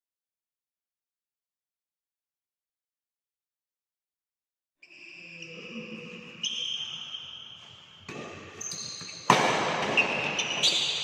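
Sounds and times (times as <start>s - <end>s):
shoes squeaking on court: 4.8s - 11.0s
racket hitting shuttlecock: 6.9s - 11.0s.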